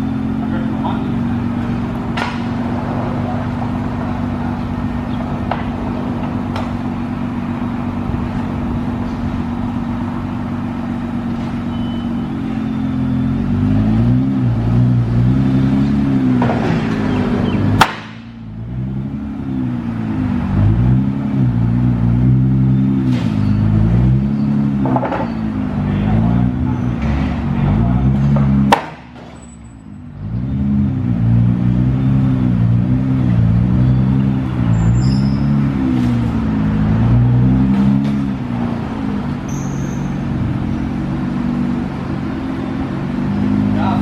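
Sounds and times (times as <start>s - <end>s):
vehicle engine running: 0.0s - 44.0s.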